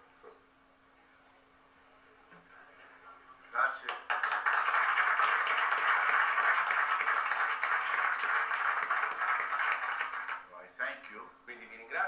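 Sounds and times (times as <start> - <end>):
audience applauding: 3.8 - 10.5.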